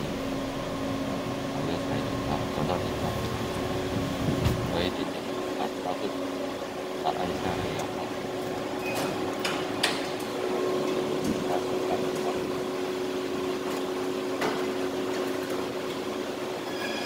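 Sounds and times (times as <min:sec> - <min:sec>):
mechanical hum: 0:00.0 - 0:17.0.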